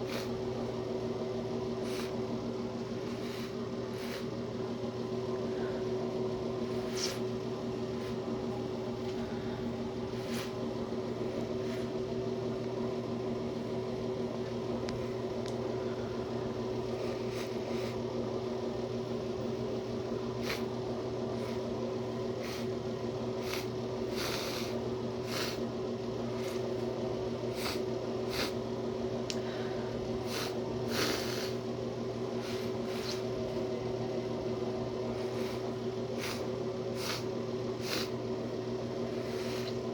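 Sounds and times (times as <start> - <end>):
electrical hum: 0.0 - 39.9
person sniffling wetly: 35.2 - 38.2.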